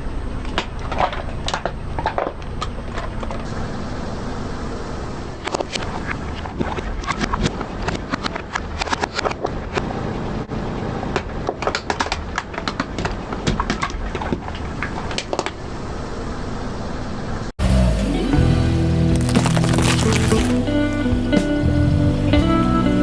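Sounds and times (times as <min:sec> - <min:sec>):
objects cracking under car tyres: 0:00.3 - 0:03.5, 0:05.4 - 0:10.0, 0:11.1 - 0:15.7, 0:19.1 - 0:20.8
music: 0:17.6 - 0:23.0.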